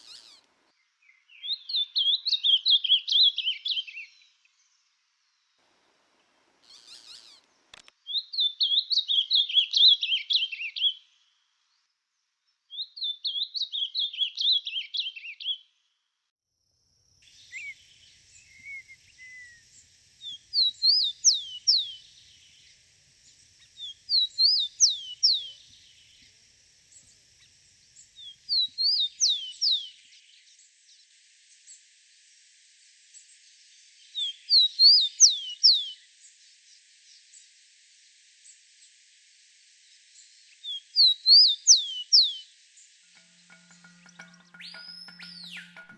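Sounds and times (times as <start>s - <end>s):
songbird warbling: 0.0s - 0.5s, 6.6s - 11.0s, 17.3s - 29.9s, 43.2s - 45.9s
steady hiss: 0.0s - 1.6s, 2.4s - 12.2s, 17.0s - 45.9s.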